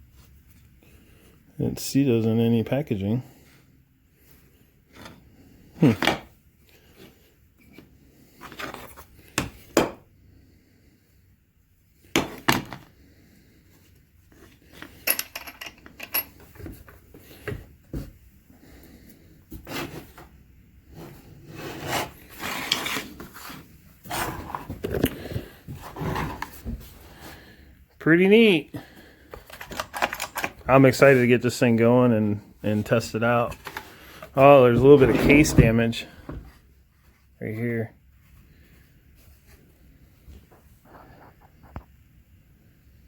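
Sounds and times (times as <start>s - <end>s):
packaging rubbing and scraping: 21.4s - 26.5s.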